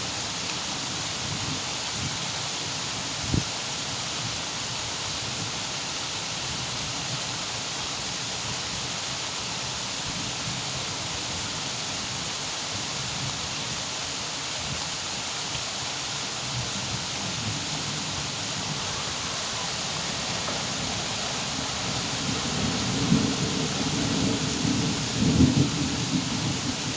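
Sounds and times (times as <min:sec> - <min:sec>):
steady rain falling: 0:00.0 - 0:26.9
thunder rumbling: 0:17.3 - 0:26.9.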